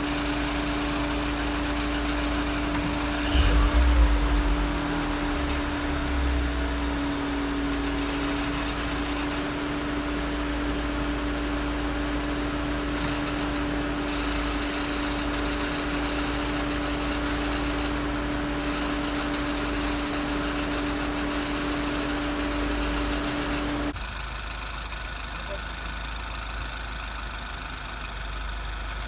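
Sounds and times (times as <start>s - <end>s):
car engine idling: 0.0s - 29.0s
steady whine: 3.2s - 8.8s.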